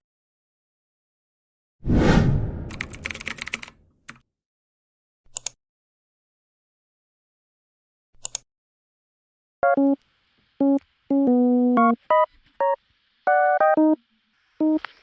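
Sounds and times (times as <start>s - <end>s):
click: 5.3s - 5.6s
short keyboard chords: 10.6s - 12.0s.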